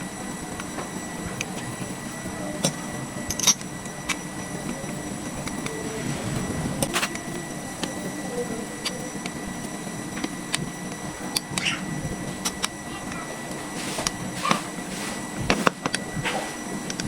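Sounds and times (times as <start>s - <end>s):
steady background hum: 0.0s - 17.0s
metal parts clicking and knocking: 2.6s - 4.8s.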